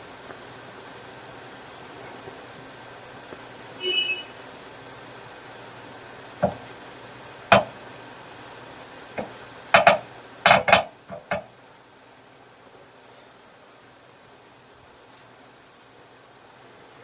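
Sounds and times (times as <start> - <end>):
faint steady hiss: 0.0 - 17.0
brief high tone: 3.8 - 4.4
sharp clicks and knocks: 6.4 - 6.7, 7.5 - 7.8, 9.2 - 11.5.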